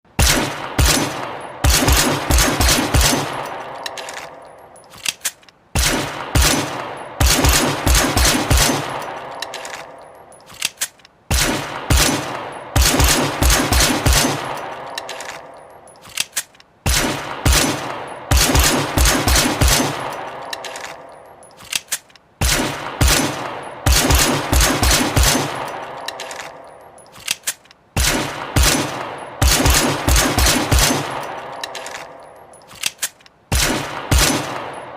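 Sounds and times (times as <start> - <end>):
automatic gunfire bursts: 0.2 - 4.2, 5.8 - 9.8, 11.3 - 15.4, 16.9 - 21.0, 22.4 - 26.5, 28.0 - 32.1, 33.5 - 34.8.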